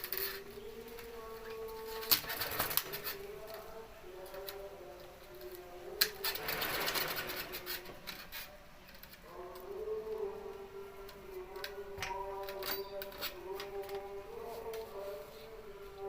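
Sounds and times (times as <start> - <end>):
slow background music: 0.0 - 16.0
hissy scraping noise: 6.2 - 8.7.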